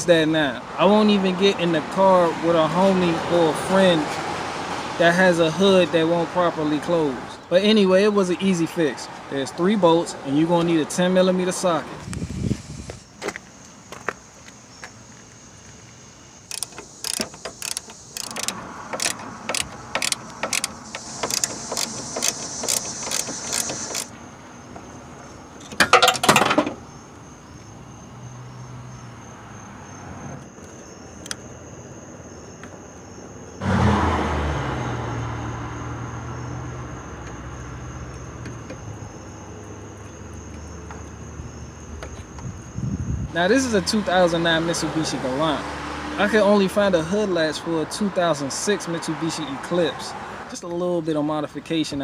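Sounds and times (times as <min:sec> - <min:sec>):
ratchet clicking: 0:16.5 - 0:24.1.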